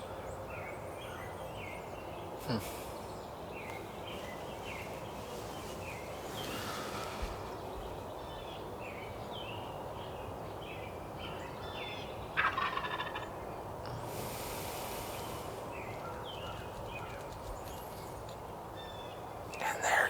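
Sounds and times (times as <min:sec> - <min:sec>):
small birds chirping: 0:00.0 - 0:12.4, 0:13.2 - 0:20.0
turkey gobbling: 0:12.4 - 0:13.4.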